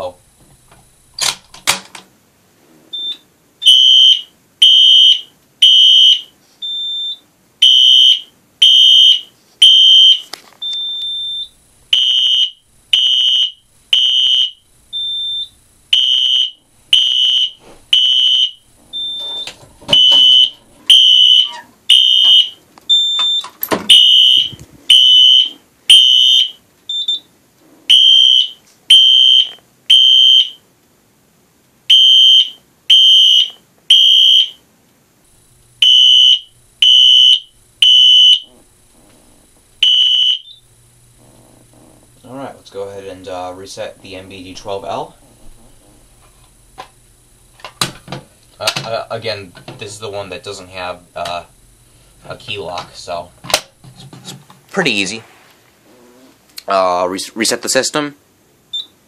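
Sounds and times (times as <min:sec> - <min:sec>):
fire alarm horn blasts: 0:03.0 - 0:27.2, 0:27.9 - 0:30.6, 0:31.9 - 0:34.6, 0:35.7 - 0:38.6, 0:39.8 - 0:40.8.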